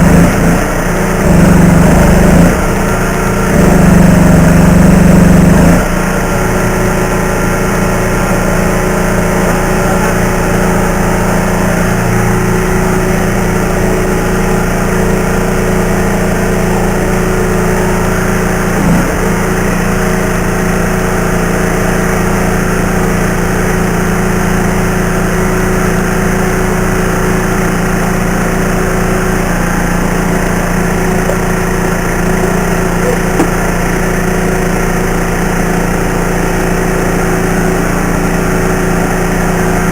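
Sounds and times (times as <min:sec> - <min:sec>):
engine running: 0:00.0 - 0:39.9
brief knock: 0:33.1 - 0:33.6.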